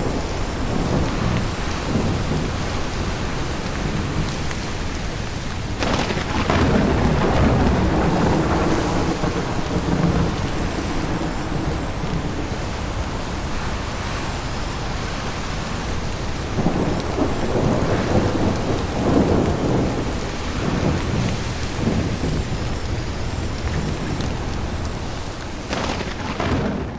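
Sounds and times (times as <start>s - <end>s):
strong gusty wind: 0.0s - 26.9s.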